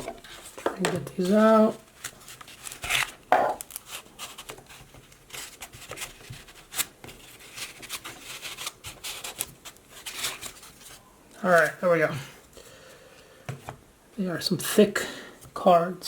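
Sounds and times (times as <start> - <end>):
cards and packaging rustling: 0.0 - 11.8.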